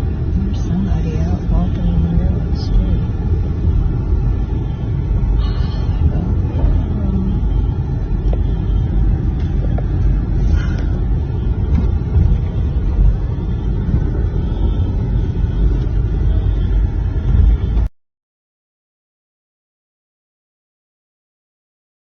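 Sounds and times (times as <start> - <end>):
car interior road rumble: 0.0 - 17.9
wind noise: 2.4 - 17.9.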